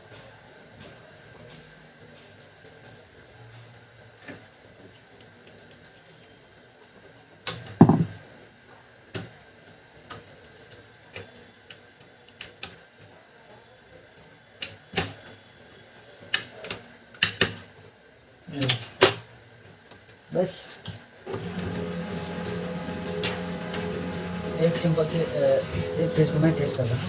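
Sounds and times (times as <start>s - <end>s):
thump: 7.8s - 8.1s.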